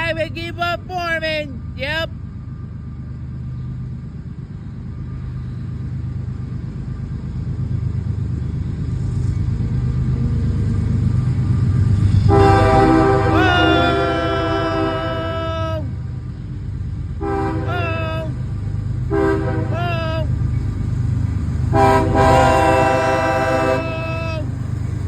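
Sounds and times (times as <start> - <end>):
locomotive engine rumble: 0.0 - 25.0
train air horn chord: 12.2 - 15.6, 17.2 - 18.2, 19.1 - 20.2, 21.7 - 24.4.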